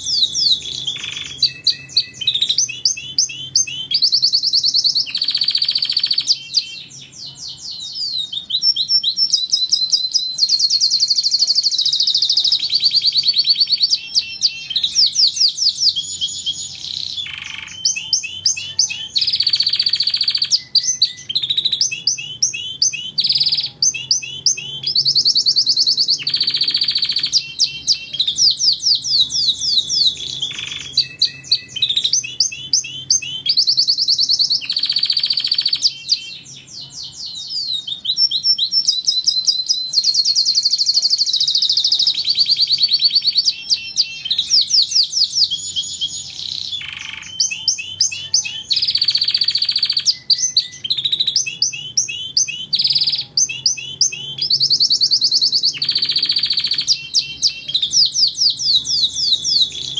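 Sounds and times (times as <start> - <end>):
canary singing trills: 0.0 - 59.9.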